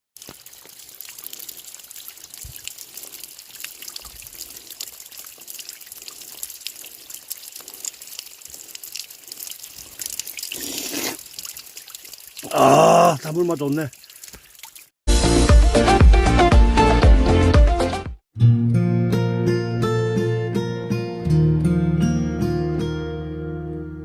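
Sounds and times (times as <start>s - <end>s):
rush of water: 0.2s - 14.9s
water drips and splashes: 0.2s - 15.0s
water trickling: 0.2s - 15.0s.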